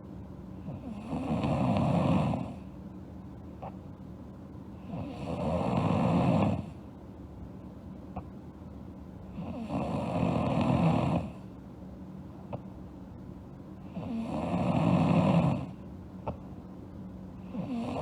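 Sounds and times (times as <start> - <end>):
girl snoring: 0.7 - 2.6, 4.9 - 6.8, 9.3 - 11.4, 13.8 - 15.8, 17.4 - 18.0
quiet breathing: 17.4 - 18.0.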